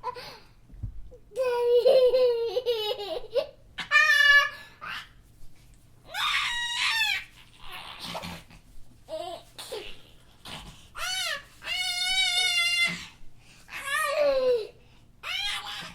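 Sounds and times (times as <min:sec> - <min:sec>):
young child laughing: 0:01.3 - 0:05.0.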